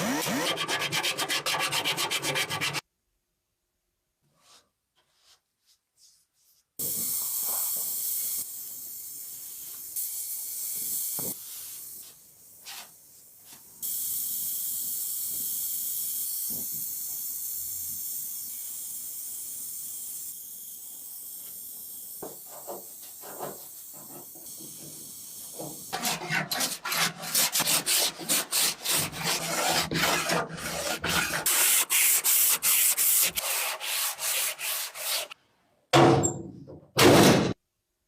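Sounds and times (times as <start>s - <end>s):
steady hiss: 6.8s - 26.0s
rubbing strokes: 25.9s - 35.4s.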